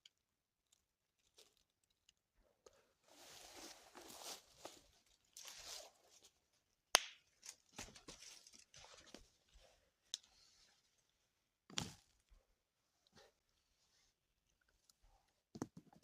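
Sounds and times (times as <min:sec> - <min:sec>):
soft rustling: 0:03.1 - 0:06.4.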